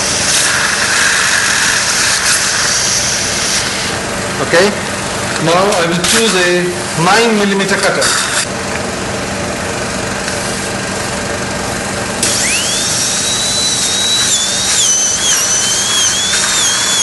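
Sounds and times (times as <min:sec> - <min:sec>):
steady hiss: 0:00.0 - 0:05.3, 0:12.2 - 0:17.0
surgical drill whine: 0:00.0 - 0:17.0.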